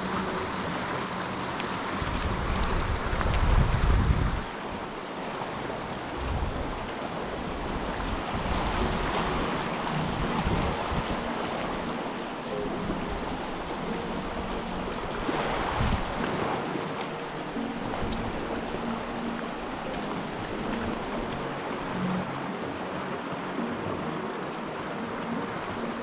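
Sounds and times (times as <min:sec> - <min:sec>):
river water rushing: 0:00.0 - 0:26.0
wind buffeting microphone: 0:01.9 - 0:04.5, 0:06.1 - 0:12.0, 0:12.6 - 0:16.3.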